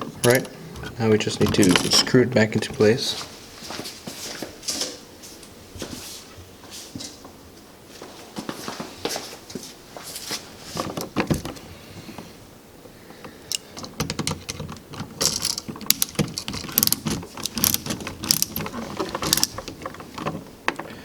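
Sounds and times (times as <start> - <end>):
screwdriver metallic clicks and rattles: 0.2 - 2.2, 13.5 - 19.8.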